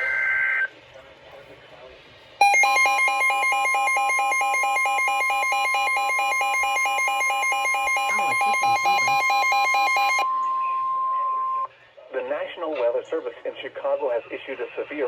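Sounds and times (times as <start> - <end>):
rapid alarm beeps: 2.4 - 11.7
steady alarm tone: 2.4 - 11.7.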